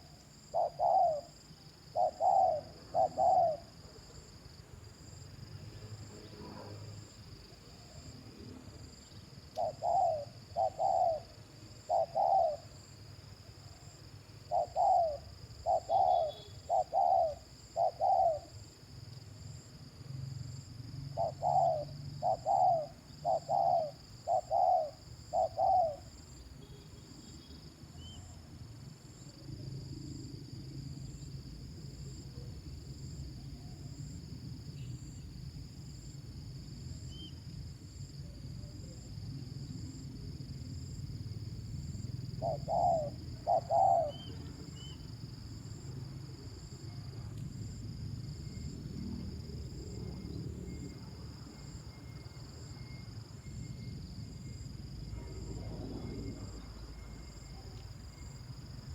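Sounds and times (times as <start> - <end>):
dove cooing: 0.0 - 3.8, 9.6 - 12.8, 14.4 - 18.6, 21.2 - 26.1, 42.4 - 45.0.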